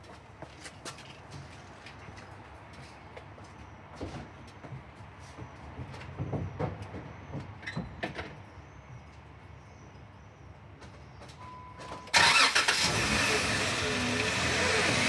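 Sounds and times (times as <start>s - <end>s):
car engine starting: 12.1s - 15.0s.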